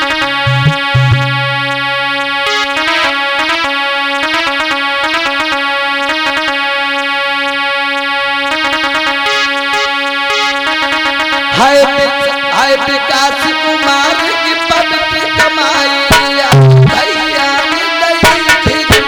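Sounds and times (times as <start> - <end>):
held drone note: 0.0 - 3.8
electronic keyboard melody: 0.0 - 19.0.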